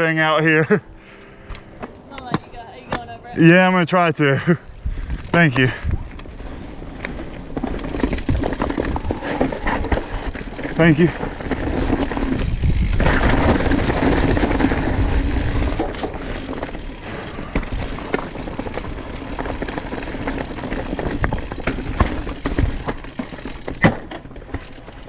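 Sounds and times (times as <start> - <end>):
wind on microphone: 4.7 - 6.6, 11.6 - 15.8
bike tyres rumbling over rocks: 4.8 - 25.0
chain and frame rattling: 7.5 - 25.0.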